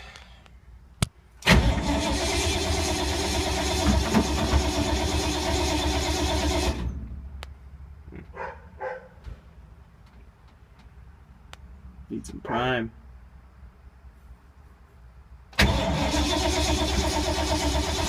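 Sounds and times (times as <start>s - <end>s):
starter cranking engine: 1.4s - 6.9s, 15.6s - 18.0s.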